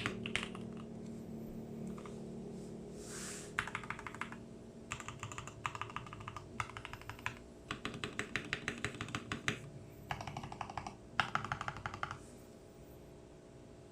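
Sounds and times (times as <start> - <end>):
mechanical keyboard typing: 0.0 - 0.9, 3.6 - 12.2
faint low hum: 0.0 - 13.9.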